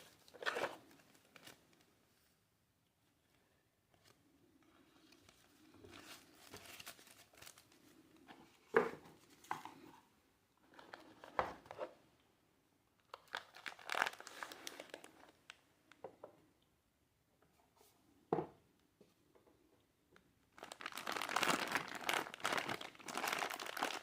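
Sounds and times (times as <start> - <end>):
packaging crinkling and rustling: 0.0 - 1.9, 5.0 - 8.0, 13.0 - 15.6, 20.5 - 24.0.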